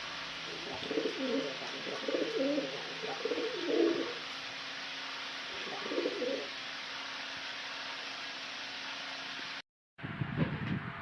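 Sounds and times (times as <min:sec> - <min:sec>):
pigeon cooing: 0:00.4 - 0:04.2, 0:05.5 - 0:06.5.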